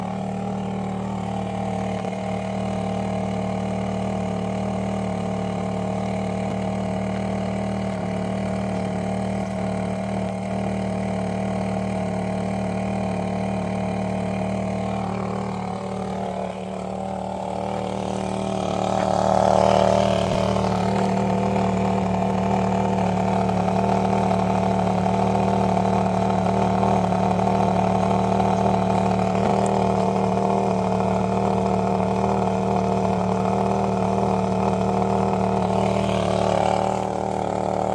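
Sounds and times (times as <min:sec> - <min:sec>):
car engine idling: 0:00.0 - 0:37.9.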